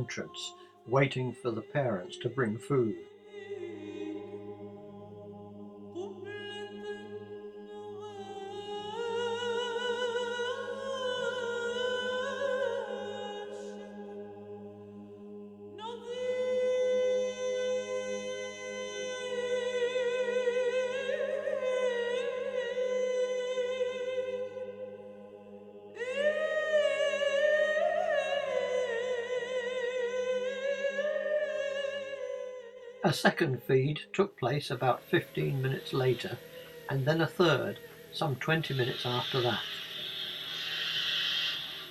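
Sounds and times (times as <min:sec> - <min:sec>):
held voice-like tones with vibrato: 0:33.0 - 0:41.9
low drone: 0:34.6 - 0:41.9.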